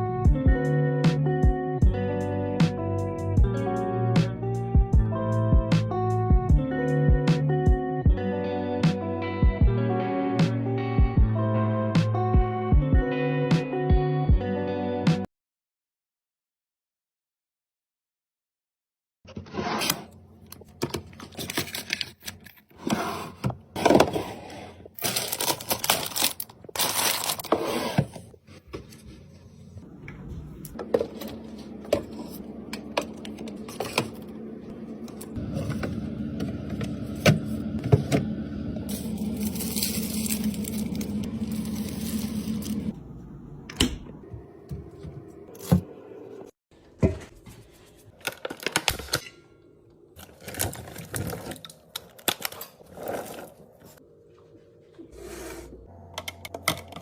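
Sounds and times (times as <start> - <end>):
packaging clicking and rustling: 20.8 - 22.7, 25.0 - 27.6, 38.9 - 42.9, 48.2 - 49.2, 50.2 - 53.6
steady mechanical hum: 28.0 - 48.3.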